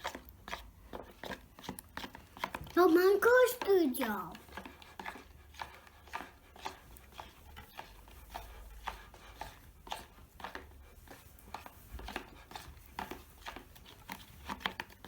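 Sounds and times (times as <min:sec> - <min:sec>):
spoon stirring in a bowl: 0:00.0 - 0:15.0.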